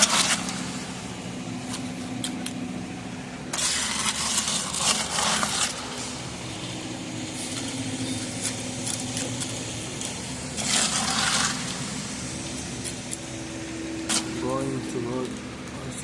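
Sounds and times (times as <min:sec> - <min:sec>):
engine running: 0:00.0 - 0:16.0
hissing scraping noise: 0:03.5 - 0:15.5.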